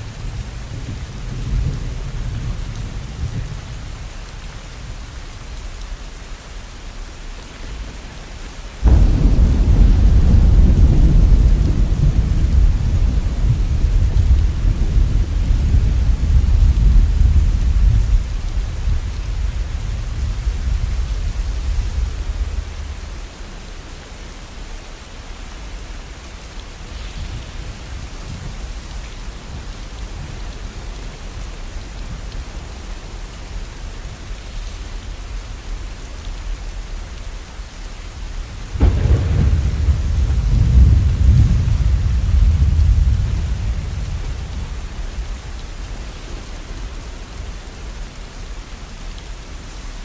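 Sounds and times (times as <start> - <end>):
steady rain: 0.0 - 50.0
thunder clap: 8.8 - 23.2, 38.7 - 45.5
thunder rumbling: 8.8 - 23.8, 38.2 - 48.4.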